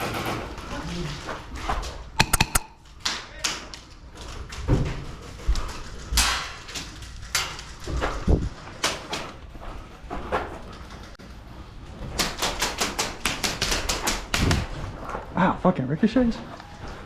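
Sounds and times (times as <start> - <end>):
bbs knocking against cover: 2.2 - 2.6
airsoft gunshots: 2.2 - 2.7.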